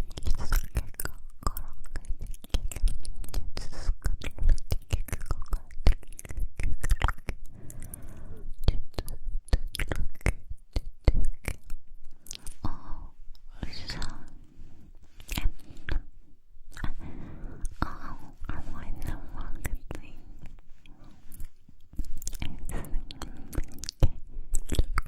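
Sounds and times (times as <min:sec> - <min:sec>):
wet mouth clicks and lip smacks: 0:00.0 - 0:07.9, 0:08.5 - 0:14.4, 0:15.0 - 0:16.1, 0:16.7 - 0:25.0
breathy whisper: 0:07.4 - 0:08.6, 0:12.1 - 0:24.5.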